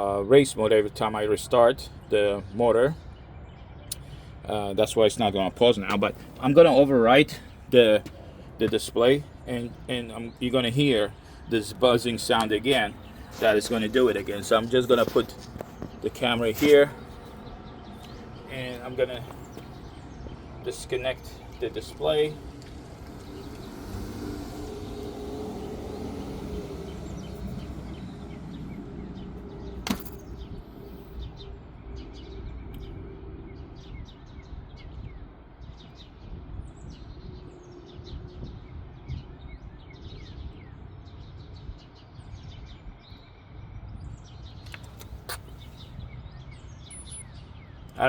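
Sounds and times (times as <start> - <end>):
birds chirping: 0.0 - 48.0
electric motor buzzing: 22.6 - 28.1.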